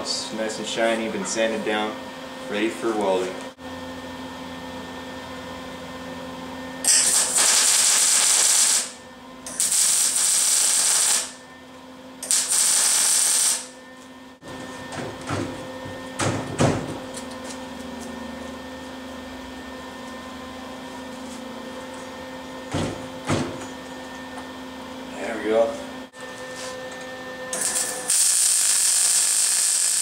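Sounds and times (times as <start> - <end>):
arc welder crackling and hissing: 6.8 - 11.4, 12.2 - 13.8, 27.6 - 30.0.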